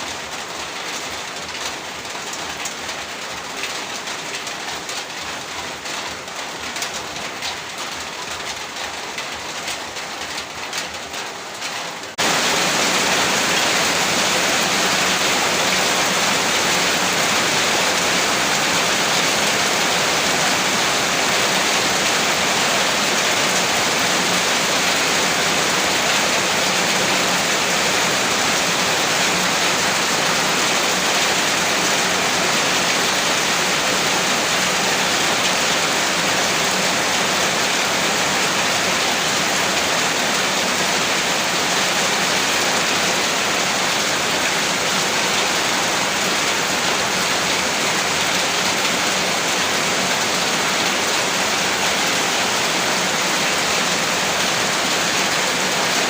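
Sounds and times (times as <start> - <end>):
heavy rain falling: 0.0 - 56.0.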